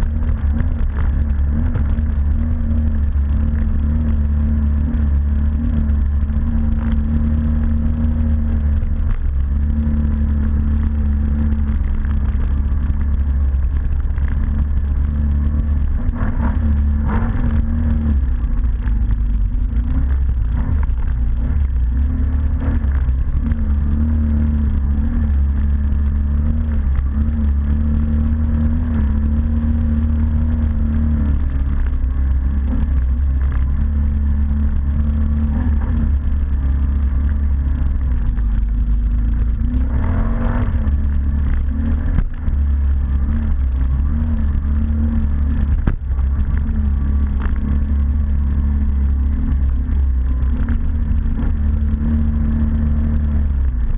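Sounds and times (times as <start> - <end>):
atv engine running: 0.0 - 53.9
clatter: 0.0 - 53.9.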